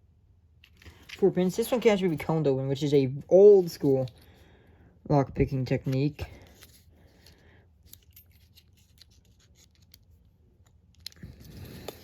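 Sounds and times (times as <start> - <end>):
lock pick clicking and scratching: 5.7 - 12.0.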